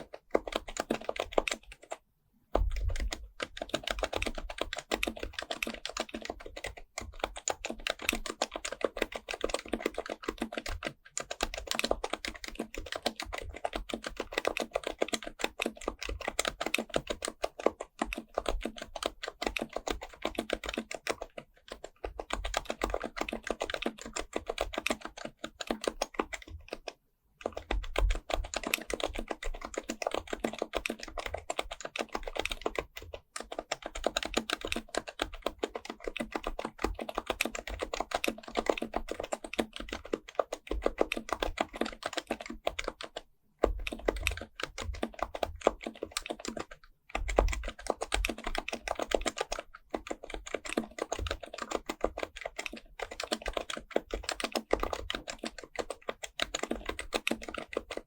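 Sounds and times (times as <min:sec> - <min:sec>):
fast typing on keyboard: 0:00.0 - 0:58.0.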